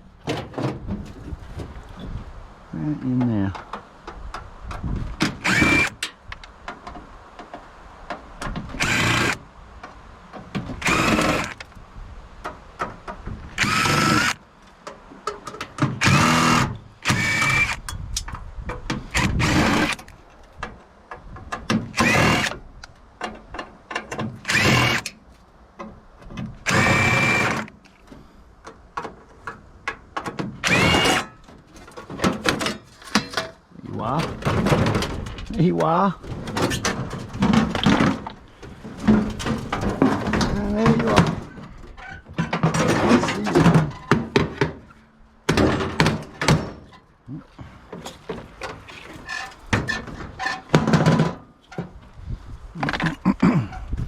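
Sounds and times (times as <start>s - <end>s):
power drill bursts: 5.4s - 6.0s, 8.8s - 9.4s, 10.8s - 11.6s, 13.6s - 14.4s, 16.0s - 17.8s, 19.1s - 20.0s, 21.9s - 22.6s, 24.4s - 25.1s, 26.7s - 27.7s, 30.6s - 31.3s.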